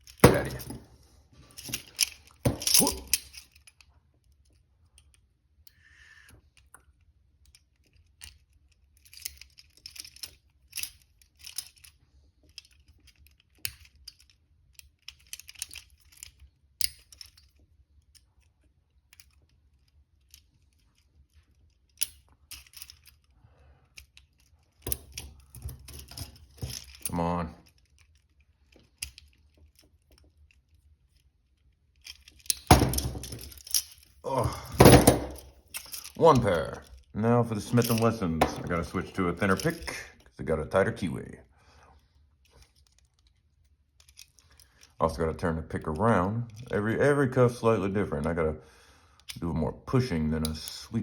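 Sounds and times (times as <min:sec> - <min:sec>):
lock pick clicking and scraping: 0:01.6 - 0:05.8, 0:07.4 - 0:23.3, 0:31.6 - 0:34.2.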